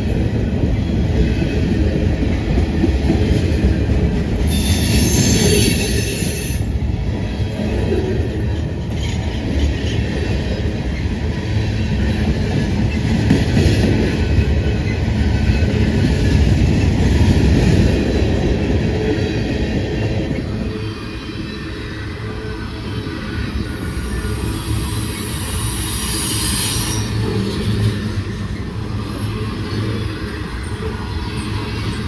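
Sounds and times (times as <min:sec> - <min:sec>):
train wheels rumbling on rails: 0:00.0 - 0:32.0
high-pitched wheel squeal: 0:04.5 - 0:06.6, 0:23.6 - 0:27.9.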